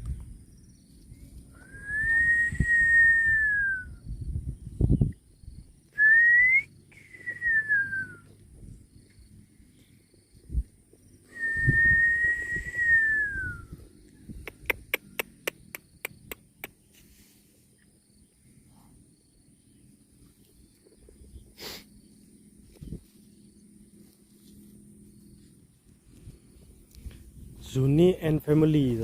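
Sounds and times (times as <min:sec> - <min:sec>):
person whistling a high note: 0:01.6 - 0:03.9, 0:06.0 - 0:08.2, 0:11.3 - 0:13.7
sharp clicks: 0:14.4 - 0:16.8.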